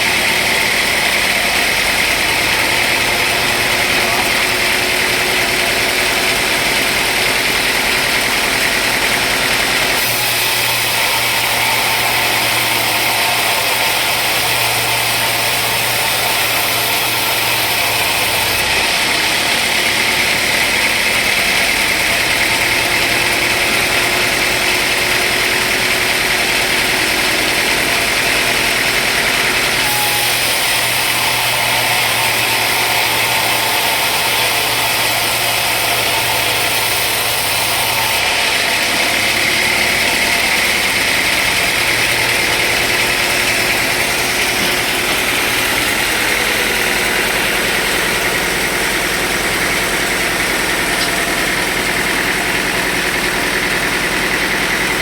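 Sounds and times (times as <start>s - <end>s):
sawmill machinery running: 0.0s - 55.0s.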